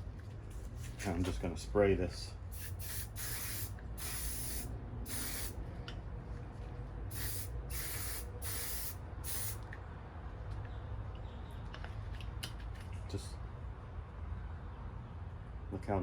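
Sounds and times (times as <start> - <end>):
aerosol can spraying hiss: 2.6 - 5.6, 7.1 - 9.6.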